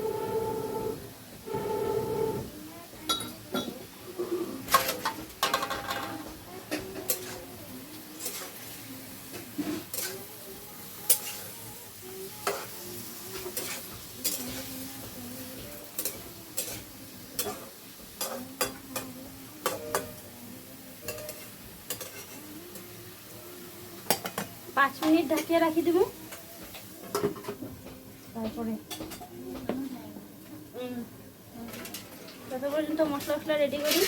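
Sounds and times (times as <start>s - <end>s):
food sizzling: 0.0s - 34.0s
spoon knocking and scraping pan: 12.4s - 16.8s, 26.6s - 29.8s.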